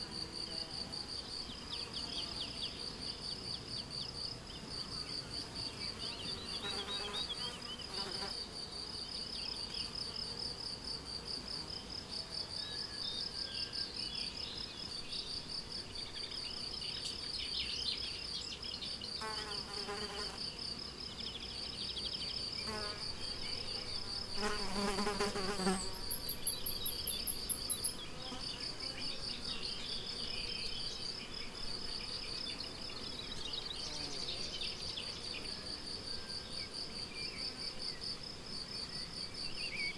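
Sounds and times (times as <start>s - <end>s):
crickets chirping: 0.0s - 39.9s
bird song: 1.4s - 8.3s, 12.5s - 20.2s, 21.2s - 39.9s
flying insect buzzing: 5.6s - 8.4s, 19.2s - 20.6s, 22.6s - 30.5s.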